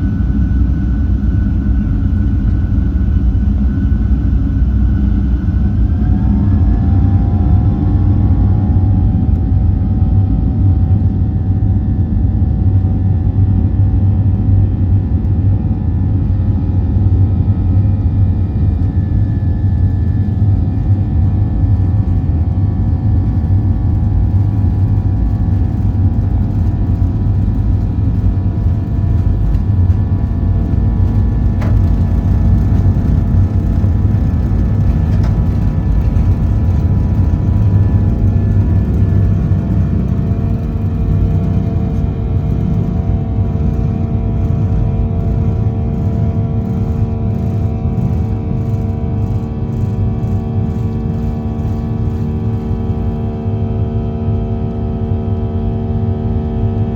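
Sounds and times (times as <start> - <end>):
airliner cabin engine rumble: 0.0 - 56.9
engine whining tones: 17.8 - 53.6.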